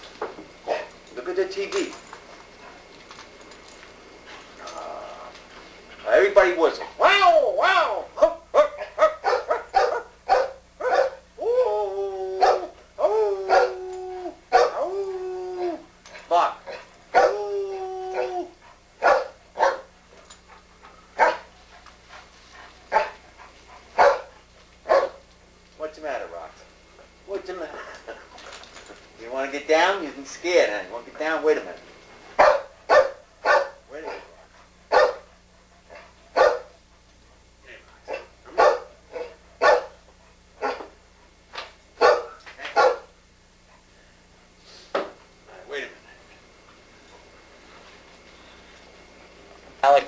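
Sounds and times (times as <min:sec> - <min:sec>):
dog barking: 0:00.7 - 0:00.9, 0:08.2 - 0:11.2, 0:12.4 - 0:12.7, 0:13.5 - 0:13.8, 0:14.5 - 0:14.8, 0:16.7 - 0:17.4, 0:19.0 - 0:19.9, 0:21.2 - 0:21.5, 0:22.9 - 0:23.2, 0:24.0 - 0:25.2, 0:32.4 - 0:34.3, 0:34.9 - 0:35.3, 0:35.9 - 0:36.8, 0:38.1 - 0:40.0, 0:40.6 - 0:40.9, 0:42.0 - 0:43.1.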